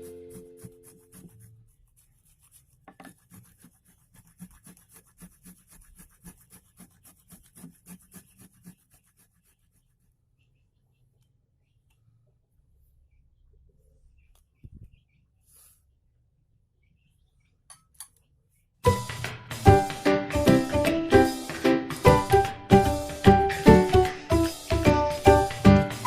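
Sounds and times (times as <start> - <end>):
rhythmic rubbing strokes: 0.0 - 10.2, 18.9 - 26.0.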